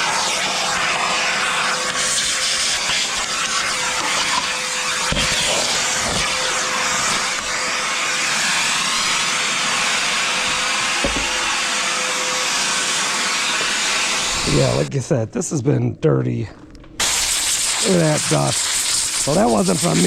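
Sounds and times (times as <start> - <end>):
vacuum motor whining: 0.0 - 14.9
dull thumps: 11.0 - 11.4.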